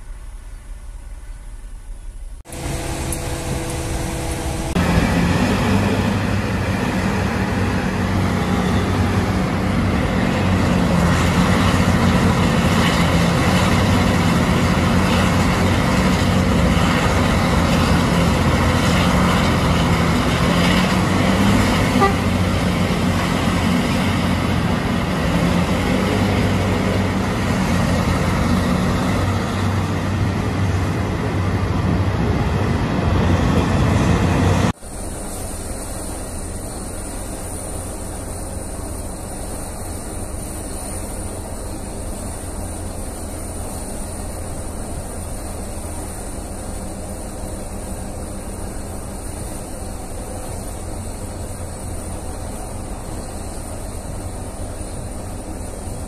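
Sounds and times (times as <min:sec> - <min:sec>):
diesel machine engine running: 0:00.0 - 0:56.0
horn-like tone: 0:21.8 - 0:22.4.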